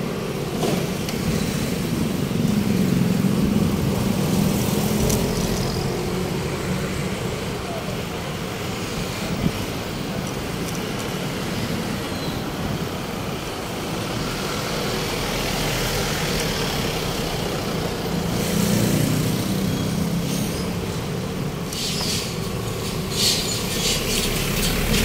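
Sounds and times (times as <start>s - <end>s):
passing vehicles: 0.0s - 25.0s
heavy vehicle rumbling past: 11.5s - 25.0s.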